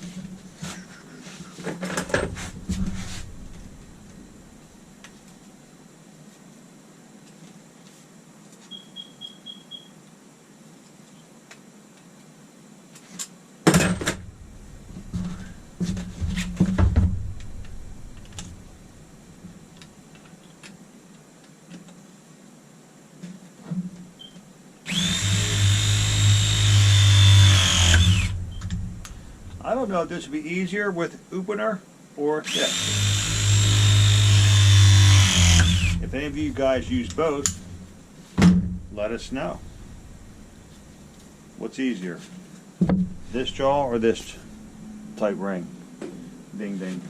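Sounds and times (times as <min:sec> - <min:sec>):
press tool motor whine: 0:24.9 - 0:28.4, 0:32.5 - 0:37.9.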